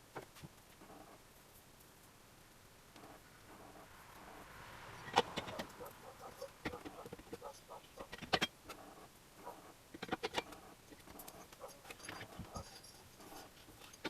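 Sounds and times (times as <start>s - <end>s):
metal tools clicking and knocking: 5.1s - 8.8s, 9.9s - 14.0s.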